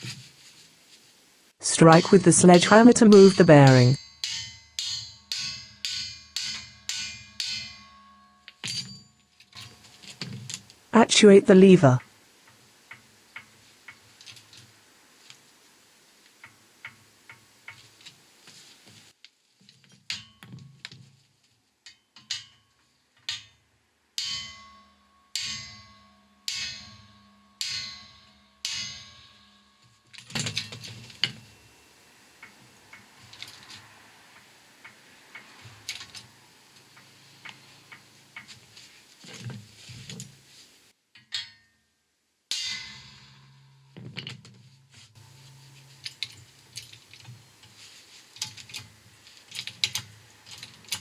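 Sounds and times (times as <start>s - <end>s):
ringing metal clanks: 1.9s - 10.6s, 20.1s - 20.8s, 24.2s - 32.6s, 41.2s - 41.8s, 42.5s - 47.6s.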